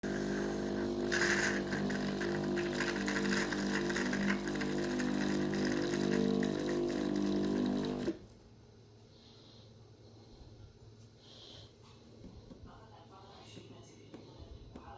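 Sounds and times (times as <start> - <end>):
coffee machine humming: 0.0 - 8.3.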